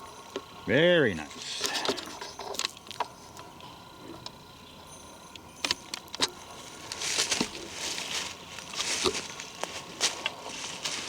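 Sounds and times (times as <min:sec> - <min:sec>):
rustling of dry forest debris: 0:05.4 - 0:11.0.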